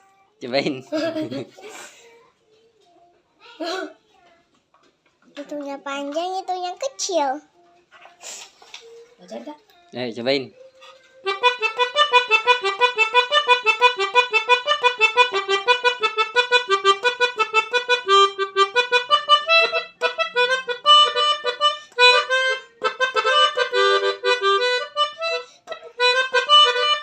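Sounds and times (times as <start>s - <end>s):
melodica playing: 10.8s - 27.0s.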